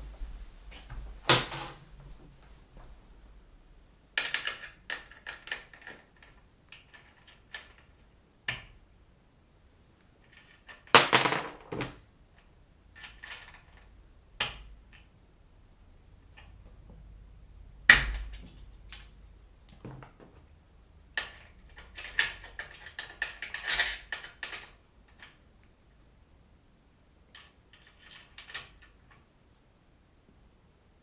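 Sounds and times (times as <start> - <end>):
computer hardware clicks and rattles: 4.2 - 7.9.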